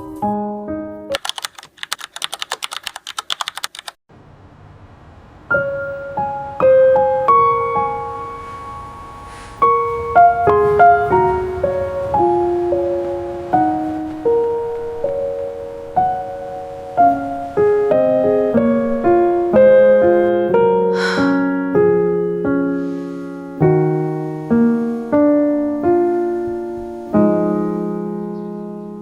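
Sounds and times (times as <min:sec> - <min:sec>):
soft solo piano: 0:00.0 - 0:01.2, 0:05.5 - 0:29.0
whoosh: 0:04.1 - 0:19.8.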